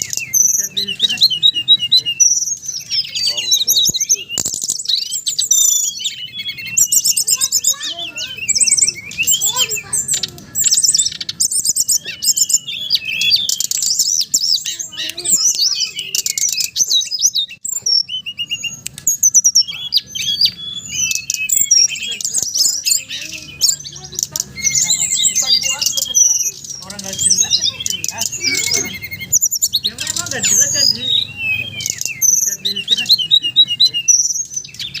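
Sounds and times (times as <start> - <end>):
songbirds chirping and trilling: 0.0 - 35.0.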